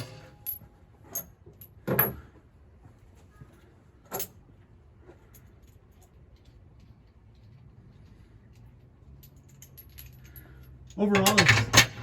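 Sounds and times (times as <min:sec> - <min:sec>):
metal bolts clinking: 0:00.0 - 0:02.3, 0:08.6 - 0:12.0.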